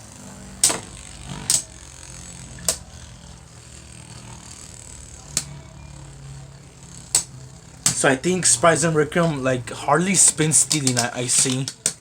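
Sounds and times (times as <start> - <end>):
faint whir of spinning tops: 0.0 - 12.0.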